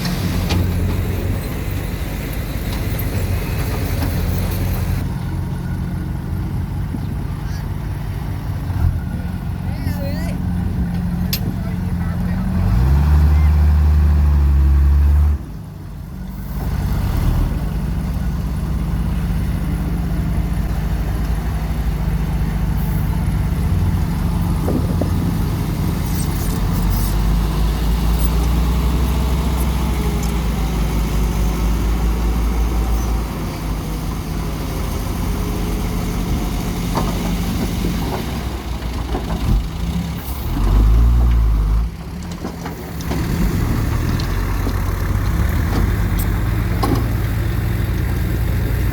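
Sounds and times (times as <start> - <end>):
diesel engine running: 0.0 - 48.9.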